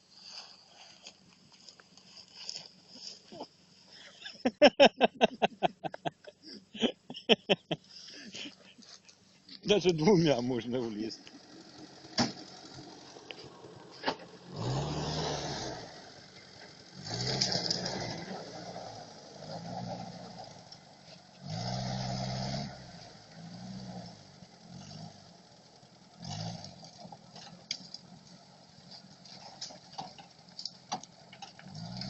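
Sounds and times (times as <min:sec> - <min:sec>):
engine revving: 0:09.8 - 0:28.3, 0:31.4 - 0:32.0.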